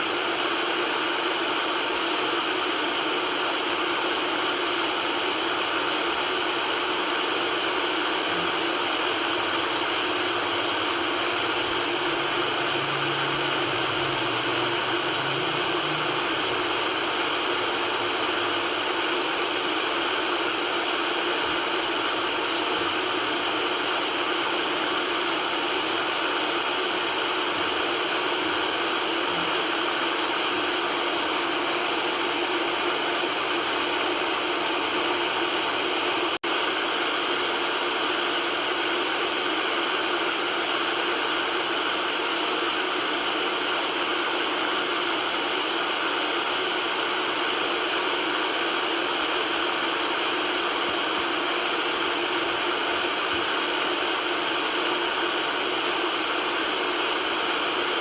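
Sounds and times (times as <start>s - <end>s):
white noise hiss: 8.3s - 19.7s.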